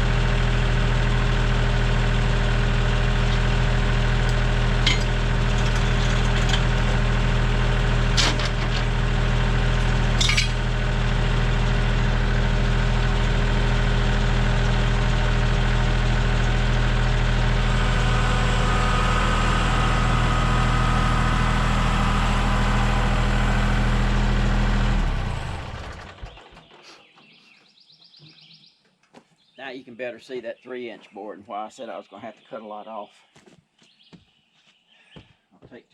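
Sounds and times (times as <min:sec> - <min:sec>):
gas engine running: 0:00.0 - 0:27.0.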